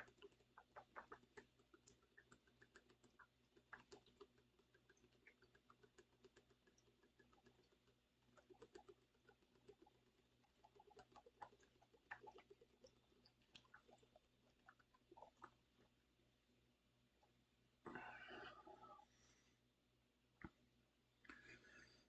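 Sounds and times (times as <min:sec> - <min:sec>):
faint small clicks: 0:00.0 - 0:10.2.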